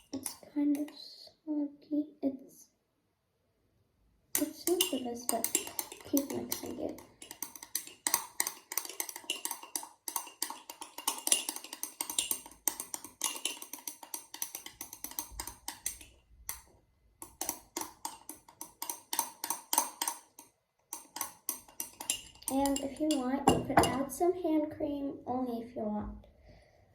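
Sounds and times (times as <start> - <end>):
utensil stirring slime: 0.0 - 1.0, 4.4 - 24.3.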